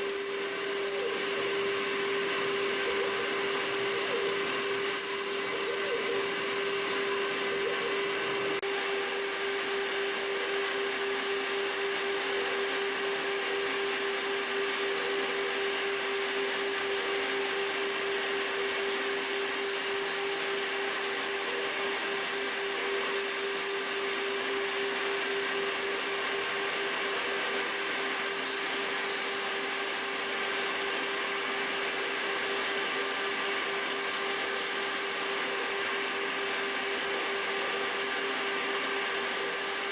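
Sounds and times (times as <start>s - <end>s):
milling machine spindle whining: 0.0s - 39.9s.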